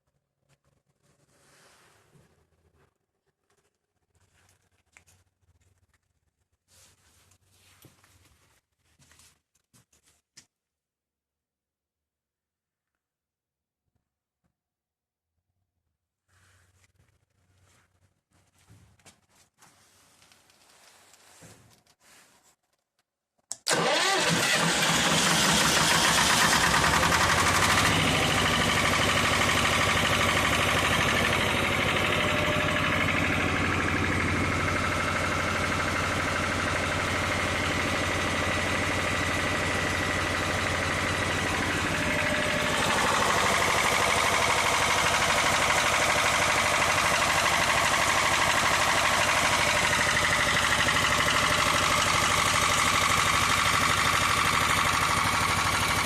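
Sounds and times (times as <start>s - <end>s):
diesel engine starting and running: 23.6s - 56.0s.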